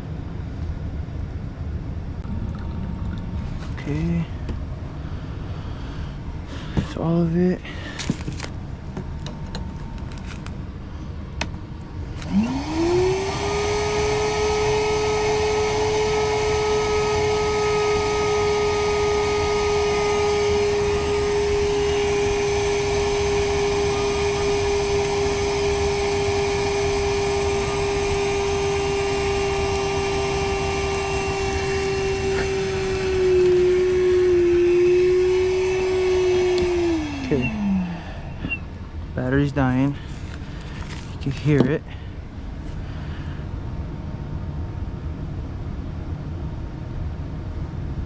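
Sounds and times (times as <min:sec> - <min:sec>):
vacuum motor whine: 0:02.2 - 0:43.4.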